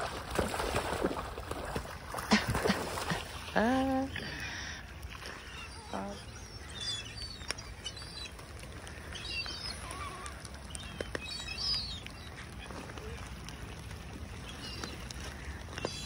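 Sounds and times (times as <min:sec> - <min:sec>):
rain falling: 0:00.0 - 0:16.0
small birds chirping: 0:03.8 - 0:16.0.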